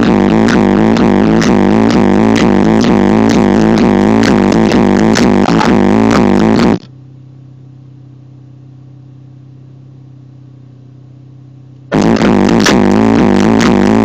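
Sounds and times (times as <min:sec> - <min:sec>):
bass-heavy music from subwoofer: 0:00.0 - 0:06.9, 0:11.9 - 0:14.0
car engine idling: 0:00.0 - 0:13.2.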